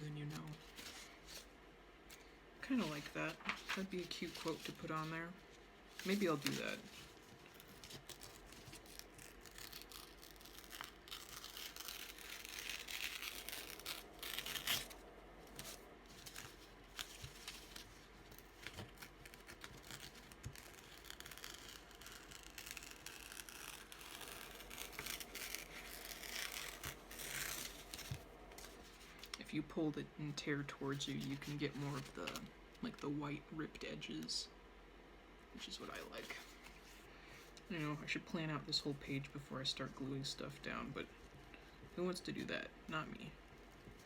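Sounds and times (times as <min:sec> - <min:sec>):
paper rustling: 0:00.2 - 0:01.5, 0:02.7 - 0:05.1, 0:05.9 - 0:29.5
paper tearing: 0:06.0 - 0:29.4.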